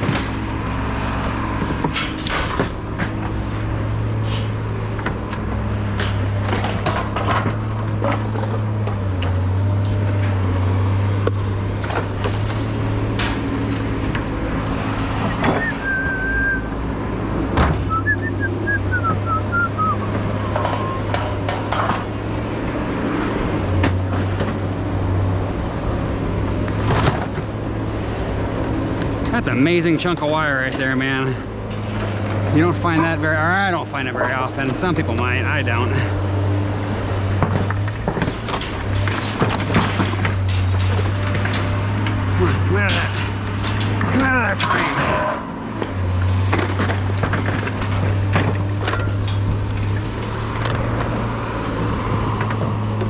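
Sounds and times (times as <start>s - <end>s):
scrap metal clanking: 0.0s - 10.4s, 37.3s - 53.0s
vehicle engine running: 0.0s - 53.0s.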